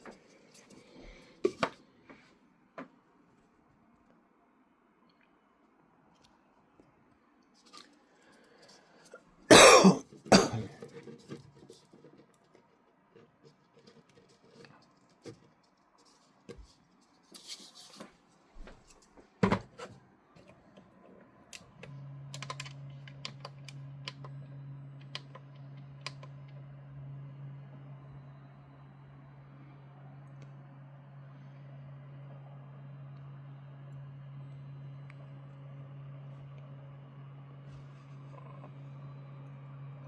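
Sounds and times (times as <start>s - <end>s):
steady low hum: 0.0s - 40.0s.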